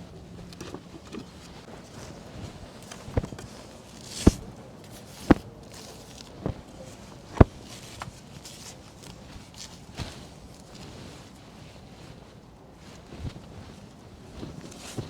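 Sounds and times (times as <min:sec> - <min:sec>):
footsteps thudding: 0:02.5 - 0:03.5, 0:04.2 - 0:04.6, 0:05.3 - 0:05.5, 0:06.4 - 0:06.7.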